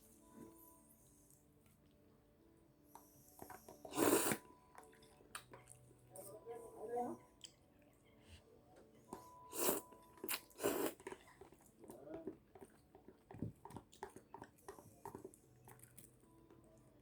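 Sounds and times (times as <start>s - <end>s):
chewing food: 3.4s - 6.4s, 9.5s - 16.6s.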